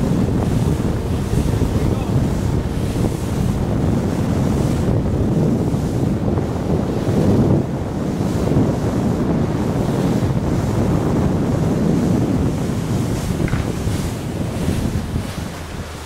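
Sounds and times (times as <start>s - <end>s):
wind buffeting microphone: 0.0s - 16.0s
water washing: 11.2s - 16.0s.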